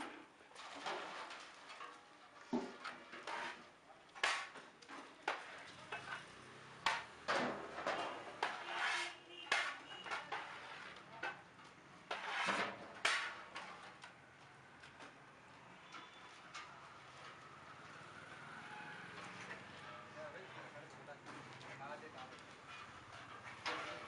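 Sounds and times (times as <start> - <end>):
metal pots clanking and scraping: 0.0 - 11.4.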